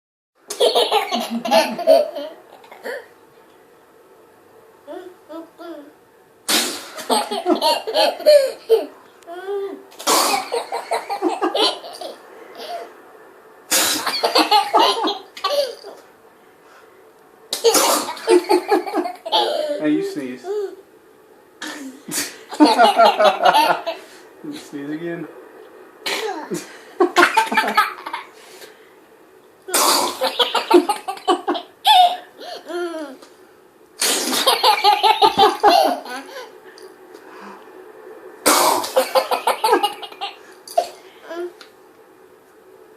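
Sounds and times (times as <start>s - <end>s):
toddler laughing: 7.1s - 9.8s, 10.6s - 12.9s, 14.2s - 16.0s, 18.2s - 19.8s, 30.2s - 33.2s, 34.4s - 36.5s, 39.0s - 40.4s.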